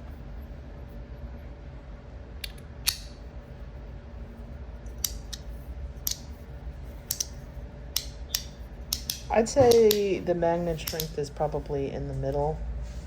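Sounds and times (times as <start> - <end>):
magnetic coin clicking: 10.8 - 11.2.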